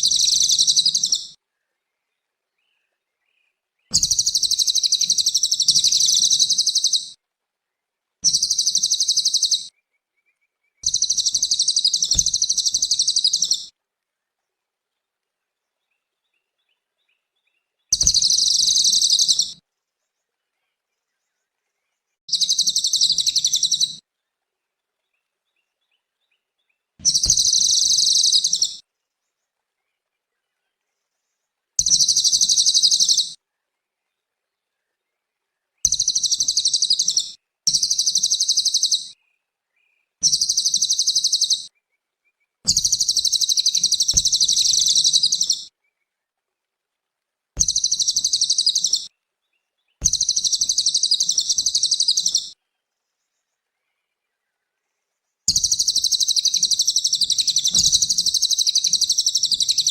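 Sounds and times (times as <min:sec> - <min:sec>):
bird singing high-pitched song: 0:00.0 - 0:01.4, 0:02.6 - 0:07.2, 0:08.2 - 0:13.7, 0:16.2 - 0:19.6, 0:22.2 - 0:24.0, 0:25.6 - 0:28.8, 0:31.8 - 0:33.4, 0:35.7 - 0:41.8, 0:42.4 - 0:46.0, 0:47.6 - 0:54.6, 0:55.5 - 0:59.9.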